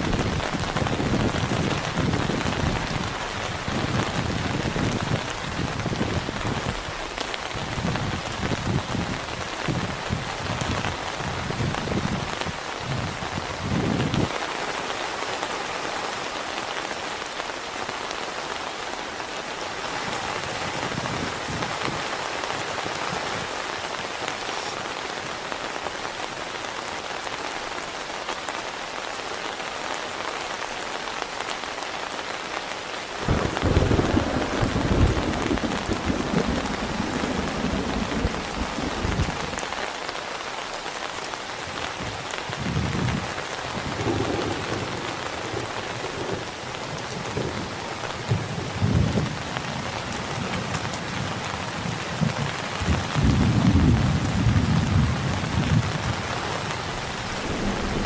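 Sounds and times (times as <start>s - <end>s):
heavy rain: 0.0s - 58.0s
thunder rumbling: 33.2s - 39.8s, 42.5s - 49.4s, 51.8s - 58.0s.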